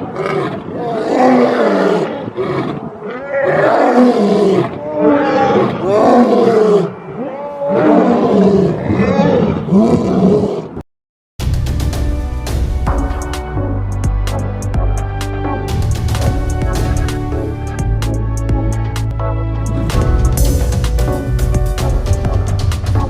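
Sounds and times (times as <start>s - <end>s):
lions growling and snarling: 0.0s - 10.8s
music: 11.4s - 23.0s.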